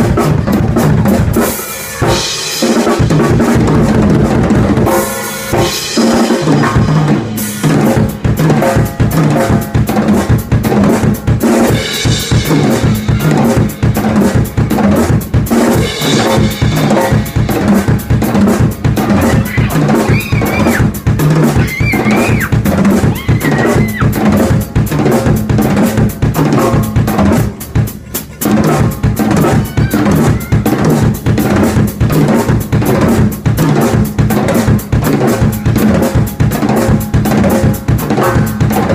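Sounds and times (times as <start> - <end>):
drum kit groove: 0.0 - 38.9
high bending melodic notes: 35.2 - 37.4.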